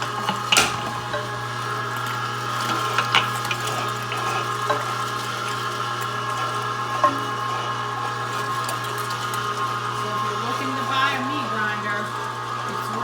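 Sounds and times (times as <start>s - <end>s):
electric meat grinder running: 0.0s - 13.0s.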